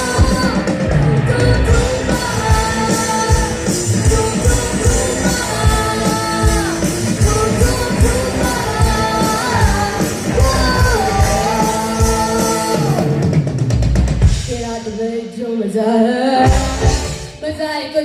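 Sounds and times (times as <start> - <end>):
person singing: 0.0 - 13.2
sustained guitar or keyboard notes: 0.0 - 14.4, 16.4 - 17.5
drum kit beat: 0.0 - 15.1, 16.4 - 17.6.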